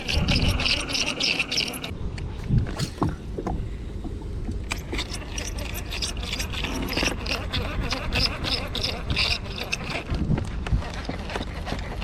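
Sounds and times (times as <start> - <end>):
fishing reel grinding and clicking: 4.7 - 10.1.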